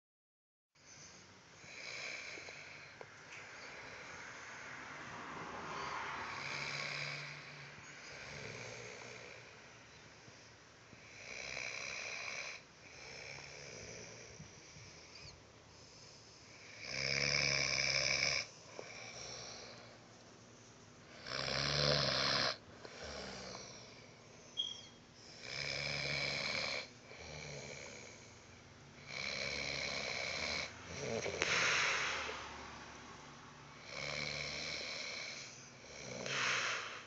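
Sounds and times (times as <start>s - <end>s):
man snoring: 1.6s - 3.0s, 5.6s - 9.6s, 10.9s - 20.0s, 21.1s - 24.5s, 25.2s - 32.6s, 33.7s - 37.0s.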